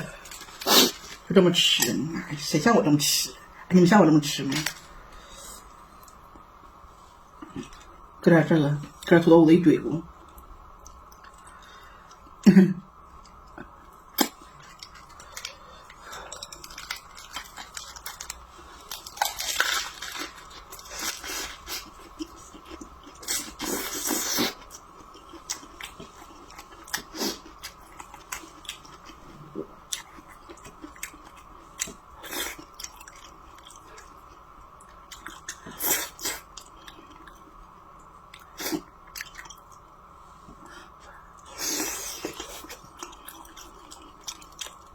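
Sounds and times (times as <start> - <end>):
faint steady hum: 0.0 - 44.9
person chewing food: 13.2 - 37.6, 38.3 - 39.8, 41.4 - 44.9.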